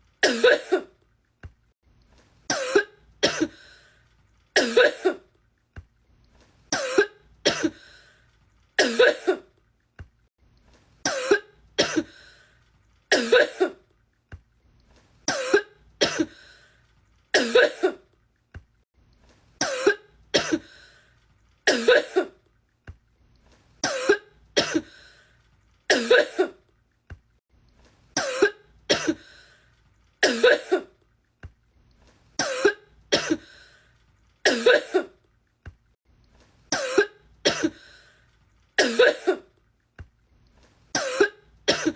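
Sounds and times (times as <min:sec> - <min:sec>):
woman coughing: 0:00.2 - 0:00.9, 0:02.5 - 0:03.6, 0:04.6 - 0:05.3, 0:06.8 - 0:07.8, 0:08.8 - 0:09.5, 0:11.1 - 0:12.2, 0:13.1 - 0:13.8, 0:15.3 - 0:16.4, 0:17.4 - 0:18.0, 0:19.6 - 0:20.7, 0:21.7 - 0:22.4, 0:23.8 - 0:24.9, 0:25.9 - 0:26.6, 0:28.2 - 0:29.2, 0:30.2 - 0:30.9, 0:32.4 - 0:33.5, 0:34.5 - 0:35.2, 0:36.7 - 0:37.8, 0:38.8 - 0:39.5, 0:41.0 - 0:41.9.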